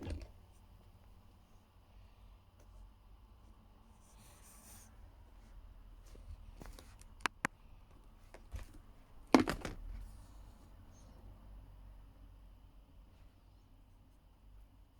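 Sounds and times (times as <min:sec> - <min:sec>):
faint rustling handling noise: 0:00.0 - 0:11.3.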